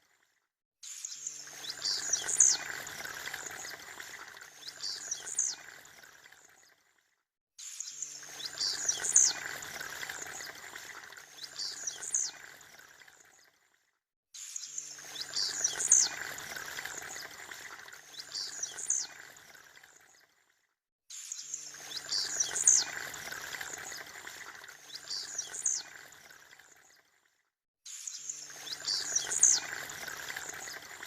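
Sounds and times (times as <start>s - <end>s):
bird song short and sharp: 27.9s - 29.7s.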